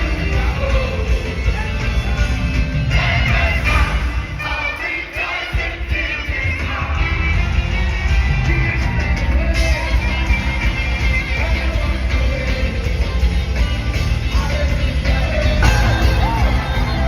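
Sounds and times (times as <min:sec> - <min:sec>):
band with heavy bass: 0:00.0 - 0:17.0
voices singing: 0:00.0 - 0:17.0.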